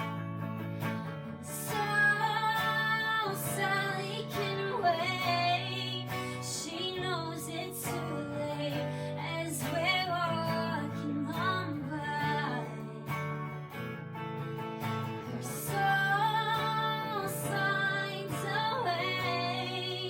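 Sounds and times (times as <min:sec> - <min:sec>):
acoustic guitar strumming: 0:00.0 - 0:20.0
woman singing: 0:01.4 - 0:13.5, 0:15.3 - 0:20.0.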